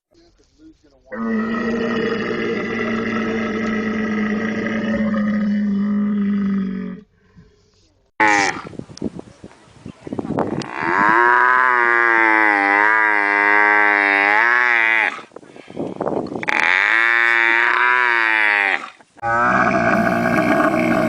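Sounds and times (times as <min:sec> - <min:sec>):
camel grunting: 0:01.1 - 0:07.1, 0:16.4 - 0:21.0
camel bellowing: 0:16.4 - 0:21.0.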